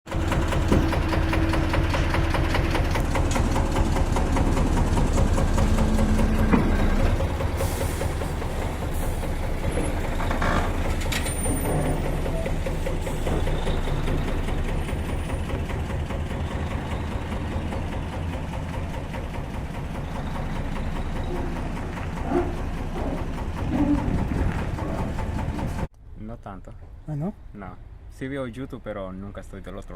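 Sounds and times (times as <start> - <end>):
diesel engine running: 0.1 - 25.9
short knocks and clanks: 3.2 - 17.0.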